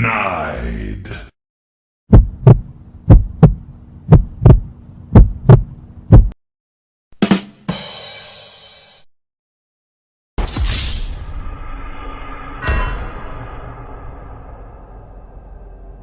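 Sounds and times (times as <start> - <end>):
voice speaking: 0.0 - 1.3
heartbeat thumps: 2.1 - 6.4.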